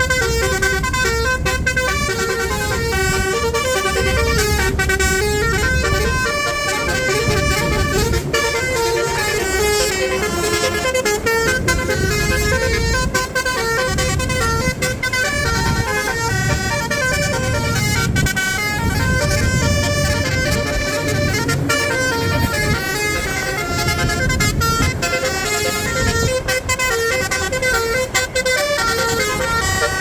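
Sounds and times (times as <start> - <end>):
engine and road rumble: 0.0 - 30.0
multi-tone bus horn melody: 0.0 - 30.0.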